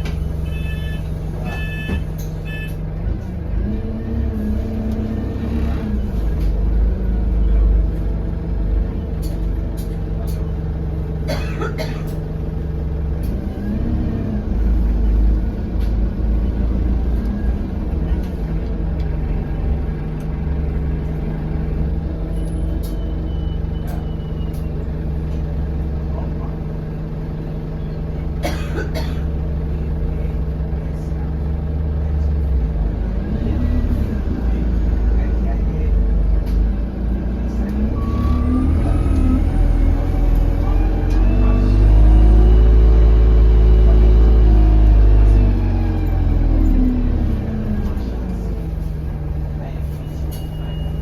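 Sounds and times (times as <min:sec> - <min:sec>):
bus diesel engine droning: 0:00.0 - 0:51.0
bus body rattling: 0:05.1 - 0:13.7.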